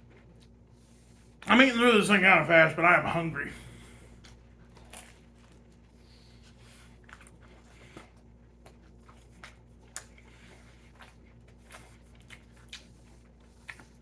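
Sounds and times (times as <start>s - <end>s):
person chewing: 4.0s - 14.0s.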